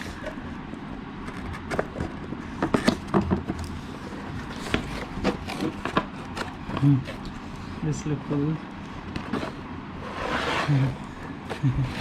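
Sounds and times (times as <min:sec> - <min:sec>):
packaging rustling: 0:04.1 - 0:07.4.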